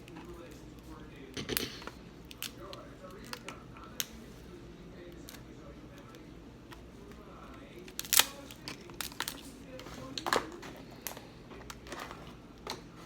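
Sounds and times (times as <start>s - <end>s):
crab shells cracking: 1.5s - 4.2s, 7.5s - 9.5s.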